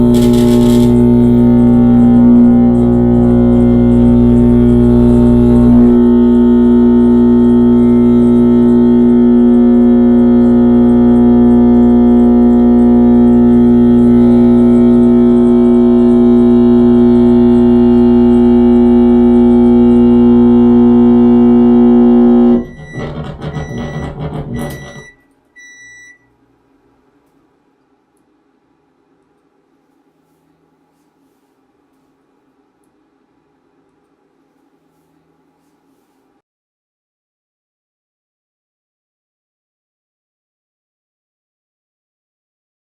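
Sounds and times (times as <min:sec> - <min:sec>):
crackling stuttering noise: 0:00.0 - 0:25.2
electronic noise drone: 0:00.0 - 0:26.2
short high beeps: 0:23.6 - 0:26.3.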